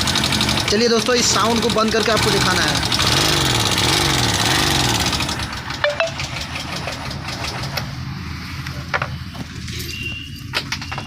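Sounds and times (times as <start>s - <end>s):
motorcycle engine idling: 0.0s - 4.2s, 5.0s - 7.4s.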